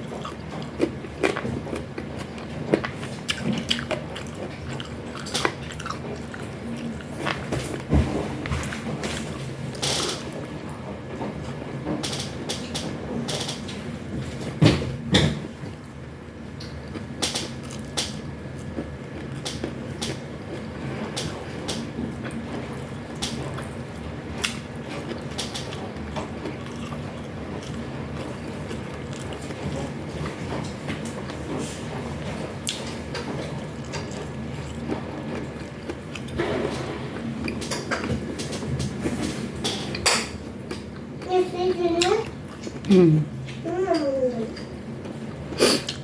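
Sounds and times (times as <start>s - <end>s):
chewing: 0.0s - 7.9s, 16.6s - 31.7s, 32.3s - 36.7s, 44.5s - 46.0s
steady low hum: 0.0s - 46.0s.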